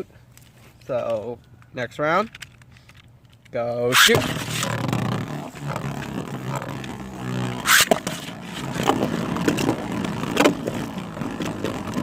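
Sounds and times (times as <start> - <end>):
spinning tops whirring: 3.8 - 12.0
spinning tops colliding clack: 7.6 - 10.7.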